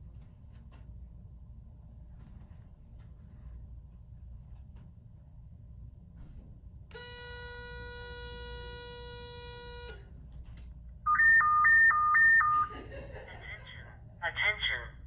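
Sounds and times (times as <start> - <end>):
steady electronic buzz tone: 6.9 - 10.1
two-pitch electronic beeping: 11.1 - 12.7.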